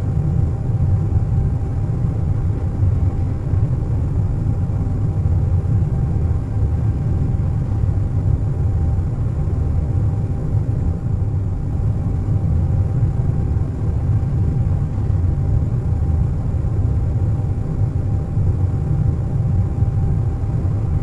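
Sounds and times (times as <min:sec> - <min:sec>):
airliner cabin rumble: 0:00.0 - 0:21.0
faint steady whine: 0:00.0 - 0:21.0.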